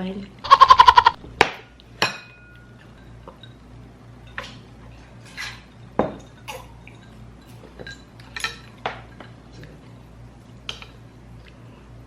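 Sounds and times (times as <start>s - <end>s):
low steady hum: 0.0s - 12.0s
utensils and dishes clinking: 2.0s - 9.8s.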